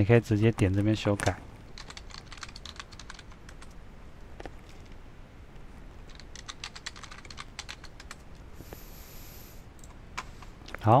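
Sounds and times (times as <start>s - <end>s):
typing on a keyboard: 1.8s - 3.8s, 6.1s - 8.2s.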